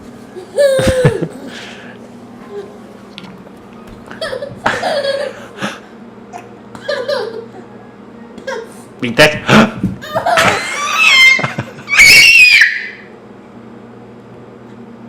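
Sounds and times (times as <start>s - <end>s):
toddler laughing: 0.3s - 1.7s, 4.1s - 5.8s, 6.4s - 7.7s, 8.4s - 8.9s, 10.0s - 12.3s
toddler squealing: 10.7s - 13.1s.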